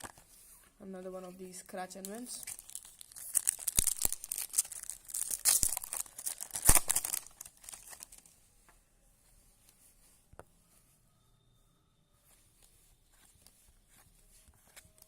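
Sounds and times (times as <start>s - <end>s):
cards being handled: 2.0s - 8.4s, 12.6s - 15.0s
card pack wrapper crinkling: 2.2s - 8.3s.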